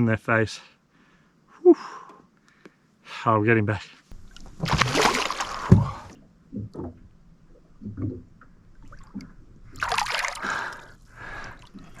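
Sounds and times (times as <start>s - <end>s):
water splashing: 4.1s - 12.0s.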